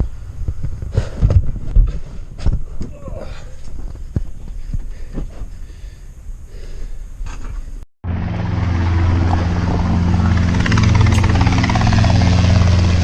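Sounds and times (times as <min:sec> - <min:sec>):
helicopter rotor drone: 0:08.0 - 0:13.0.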